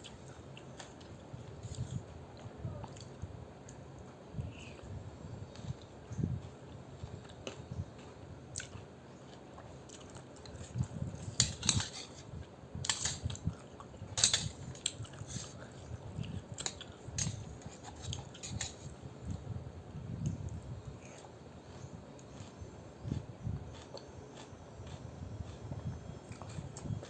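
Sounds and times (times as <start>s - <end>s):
person chewing noodle soup: 5.5s - 12.2s, 13.0s - 19.4s, 20.2s - 27.0s.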